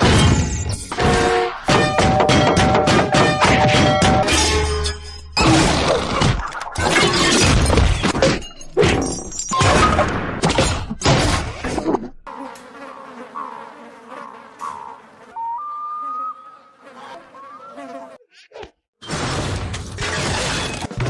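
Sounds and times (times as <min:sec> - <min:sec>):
cartoon crashing and shattering: 0:00.0 - 0:11.8, 0:19.0 - 0:21.0.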